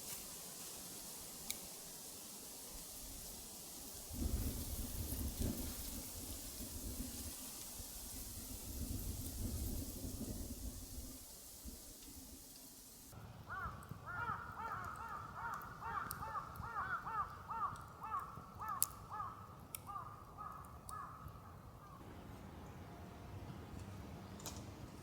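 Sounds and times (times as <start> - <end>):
faint sharp ticks: 1.4 - 1.6
birds calling: 13.5 - 22.1.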